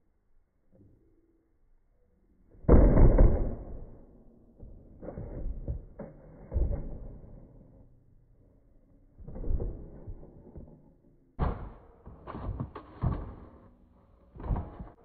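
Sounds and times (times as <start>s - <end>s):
dull knocks and thumps: 11.4s - 13.7s.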